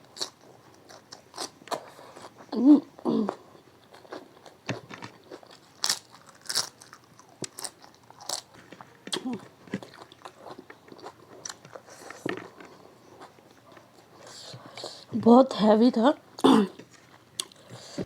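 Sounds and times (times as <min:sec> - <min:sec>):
crunchy bites: 0:04.8 - 0:08.5.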